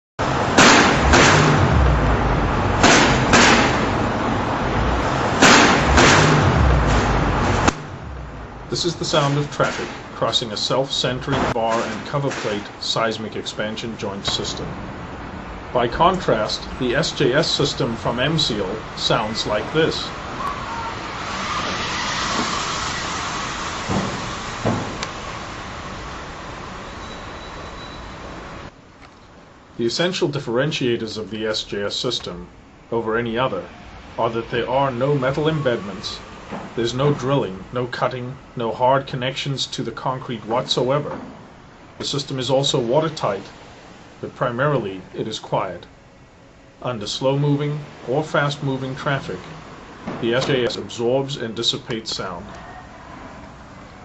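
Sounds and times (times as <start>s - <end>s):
car tyre noise: 0.2s - 29.1s
traffic rumble: 0.2s - 54.0s.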